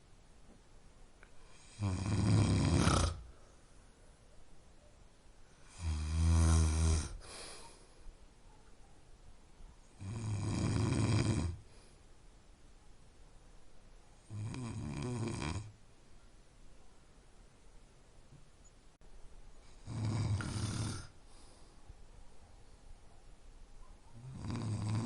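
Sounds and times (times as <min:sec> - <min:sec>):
person snoring: 0:01.5 - 0:03.3, 0:05.6 - 0:07.4, 0:10.0 - 0:11.6, 0:14.3 - 0:15.7, 0:19.7 - 0:21.2, 0:24.3 - 0:25.0.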